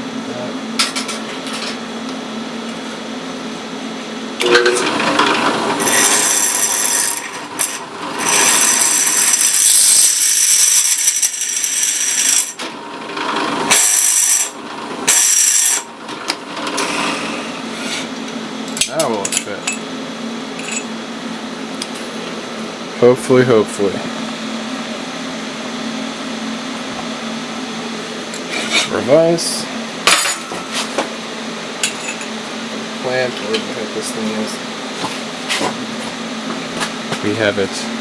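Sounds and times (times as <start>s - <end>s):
drill press motor humming: 4.4s - 18.4s
drill bit screeching in metal: 4.8s - 12.6s, 13.7s - 15.9s.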